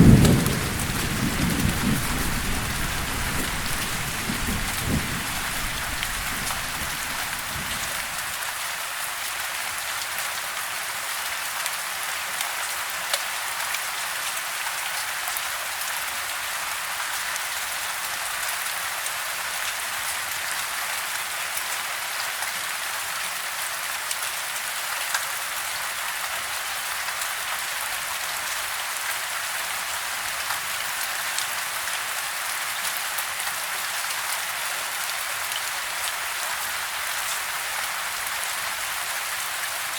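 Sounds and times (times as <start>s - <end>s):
rain drop ticks: 0.0s - 8.1s
low thunder rumble: 0.0s - 8.2s
steady rain hiss: 0.0s - 11.5s.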